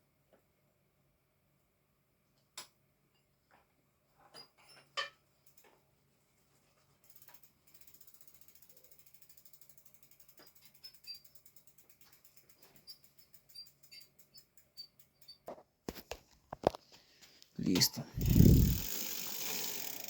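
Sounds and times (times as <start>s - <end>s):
bicycle freewheel ticking: 7.0s - 15.4s, 18.2s - 20.0s.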